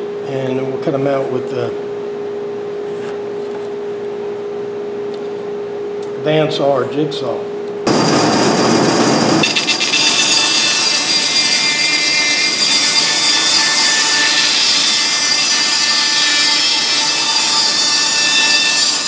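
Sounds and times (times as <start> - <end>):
low machine rumble: 7.8 - 9.7
bandsaw cutting wood: 7.9 - 19.0.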